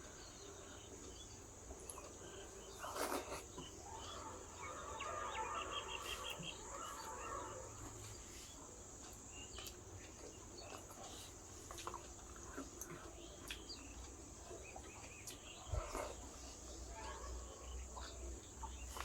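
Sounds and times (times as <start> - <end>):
bird chirps: 0.0 - 11.4, 12.9 - 19.0
chewing and lip smacks: 9.0 - 16.5.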